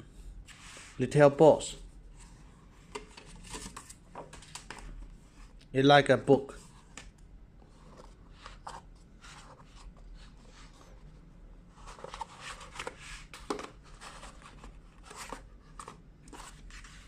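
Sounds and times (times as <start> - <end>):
cardboard and paper rustling: 2.9 - 5.4, 11.7 - 17.0.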